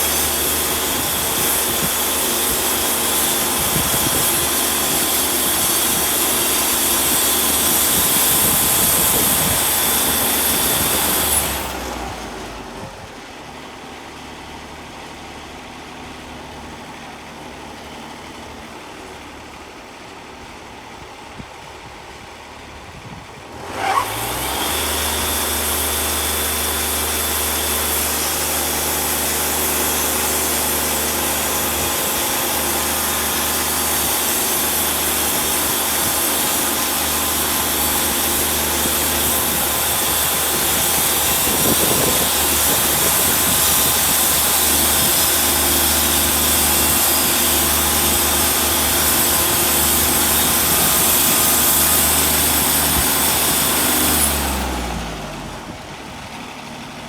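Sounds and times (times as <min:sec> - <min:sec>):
band blade cutting log: 0:00.0 - 0:12.1, 0:23.6 - 0:55.7
sawmill engine running: 0:00.0 - 0:57.0.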